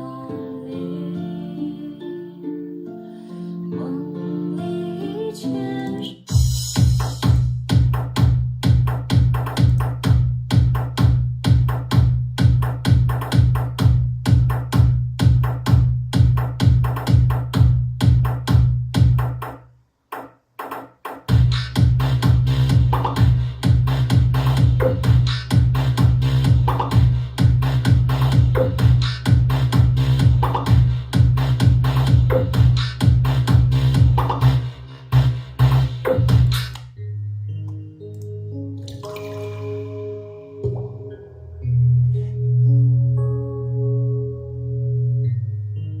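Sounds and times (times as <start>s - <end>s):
electronic dance music: 6.2s - 36.8s.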